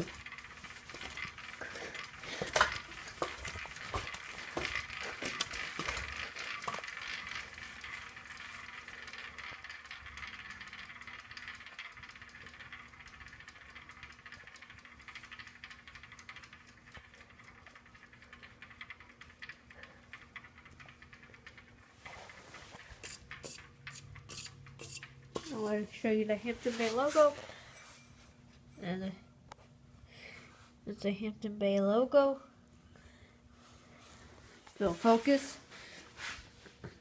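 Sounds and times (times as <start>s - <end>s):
light ticks and rattles: 0.0s - 28.2s
ceiling fan whirring: 0.0s - 37.0s.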